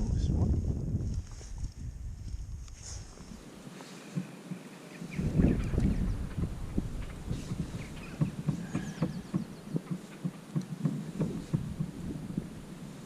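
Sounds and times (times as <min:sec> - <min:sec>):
soft knocks and thumps: 0:06.2 - 0:12.0.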